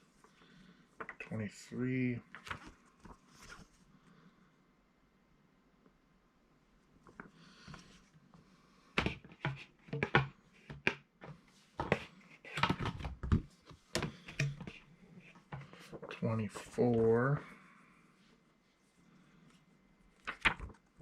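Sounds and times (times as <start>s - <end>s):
comic books shuffled by hand: 2.2s - 3.9s, 20.1s - 21.0s.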